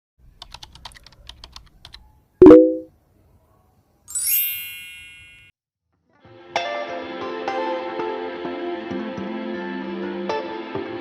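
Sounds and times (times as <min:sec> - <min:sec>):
typing-like clicks: 0:00.4 - 0:02.6
bright rising chime: 0:04.1 - 0:05.5.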